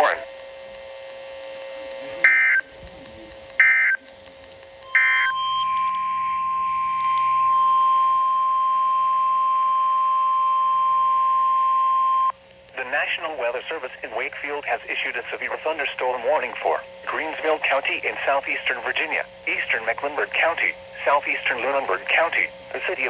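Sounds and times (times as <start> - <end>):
faint steady hum: 0.0 - 23.0
digital data bursts: 2.1 - 4.1, 4.8 - 5.8
steady alarm beep: 2.2 - 2.7, 3.6 - 4.0, 4.8 - 12.3.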